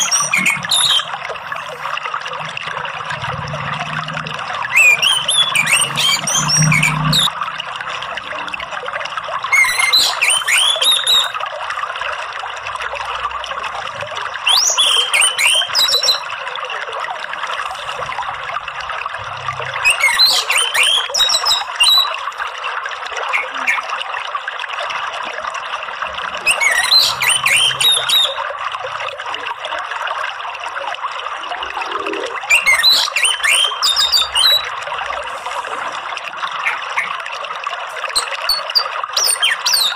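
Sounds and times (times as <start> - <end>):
bird singing whistled phrases: 0.0 - 1.2, 4.7 - 7.3, 9.5 - 11.4, 14.4 - 16.3, 19.8 - 22.2, 23.3 - 23.9, 26.4 - 28.4, 32.5 - 34.7, 38.0 - 39.9
trickle of running water: 0.0 - 39.9.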